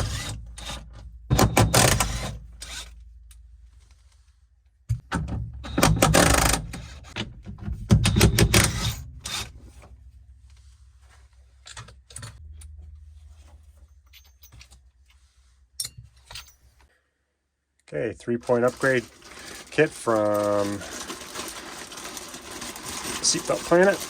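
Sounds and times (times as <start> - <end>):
faint low hum: 9.8 - 17.0
clattering hard objects: 18.4 - 24.0
packaging rustling: 18.4 - 24.0.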